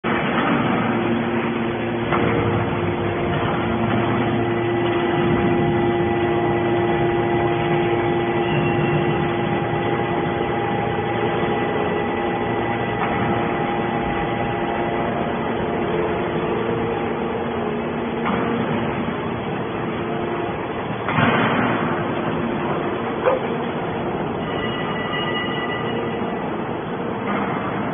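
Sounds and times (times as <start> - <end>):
hydraulic baler humming and whining: 0.1 - 27.9
machine knock: 1.9 - 15.4.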